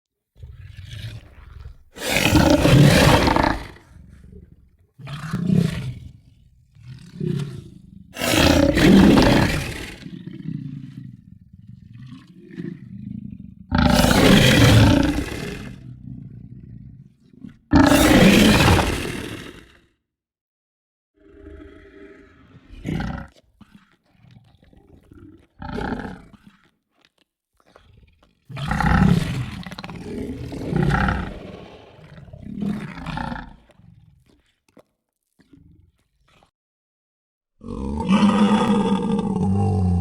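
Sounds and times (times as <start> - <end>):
creature roaring: 2.0 - 3.8, 8.2 - 10.0, 13.8 - 15.8, 17.7 - 19.7, 28.6 - 33.7, 37.6 - 40.0
creature growling and grunting: 8.2 - 10.0, 28.7 - 33.7, 37.6 - 40.0.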